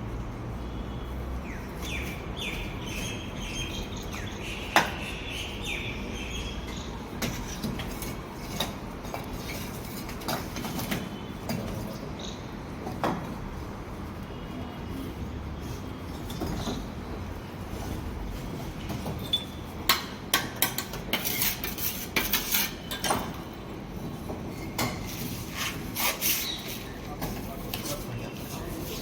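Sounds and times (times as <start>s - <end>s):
birds chirping: 1.4s - 7.1s.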